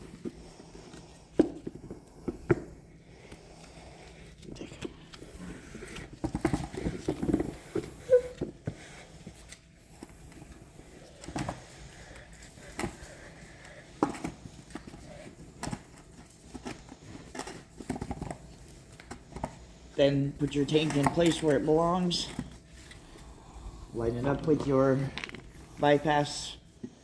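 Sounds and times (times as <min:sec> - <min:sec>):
plastic squeak: 0:07.9 - 0:08.5
plastic parts knocking and clicking: 0:13.9 - 0:19.6.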